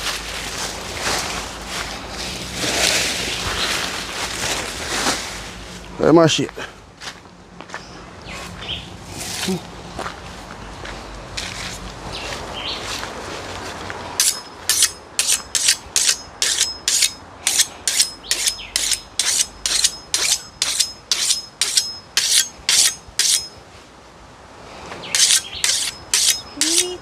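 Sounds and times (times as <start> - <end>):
file rasping on chainsaw chain: 14.2 - 23.5, 25.2 - 27.0.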